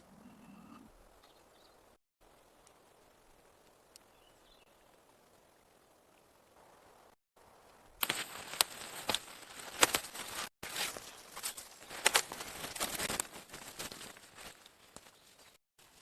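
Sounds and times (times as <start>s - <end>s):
dry plants rustling and crackling: 2.2s - 16.0s
twigs snapping: 8.0s - 15.4s.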